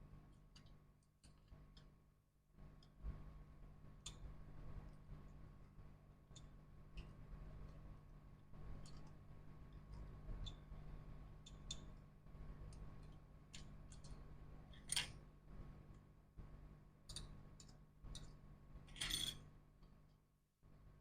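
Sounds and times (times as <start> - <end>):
faint steady hum: 0.0 - 21.0
small tools clicking and tapping: 0.5 - 1.9, 8.8 - 10.6, 12.7 - 15.2, 17.1 - 19.4.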